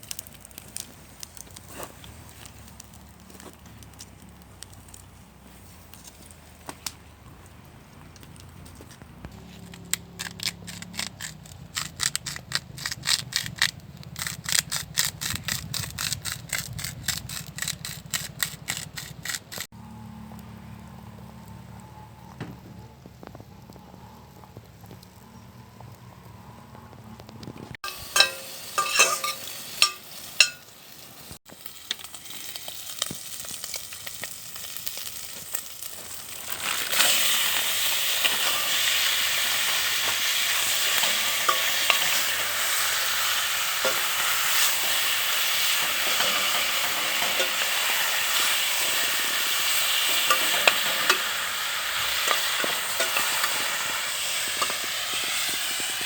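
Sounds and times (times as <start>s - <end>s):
food sizzling in a hot pan: 27.8s - 56.0s.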